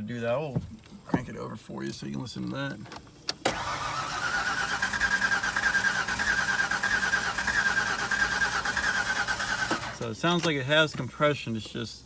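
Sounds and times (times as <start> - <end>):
engine cranking without starting: 3.2 - 10.6.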